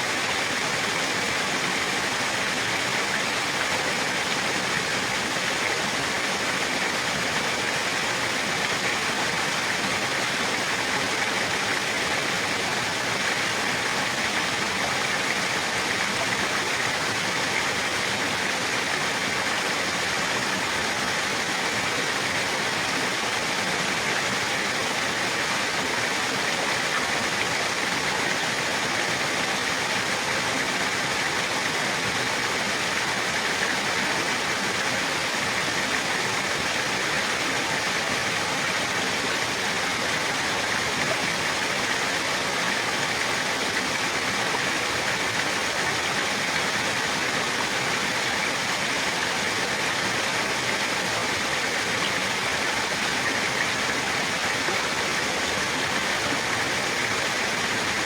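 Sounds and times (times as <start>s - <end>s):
water rushing: 0.0s - 58.0s.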